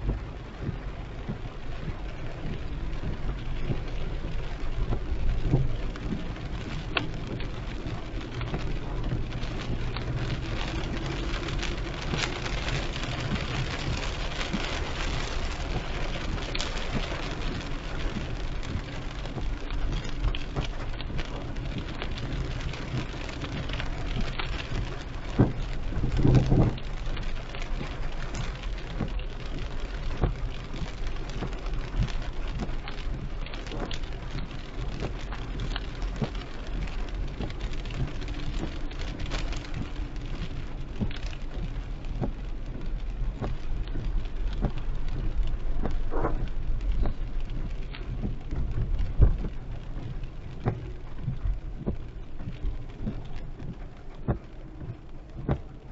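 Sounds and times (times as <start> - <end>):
engine and road rumble: 0.0 - 55.9
heavy rain pattering on car: 0.0 - 55.9.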